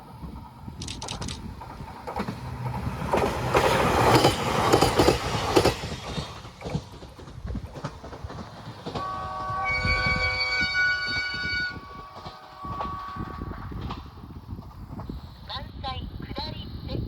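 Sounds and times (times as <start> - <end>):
train wheels clacking on rails: 0.8 - 15.2
train horn chord: 9.0 - 13.8.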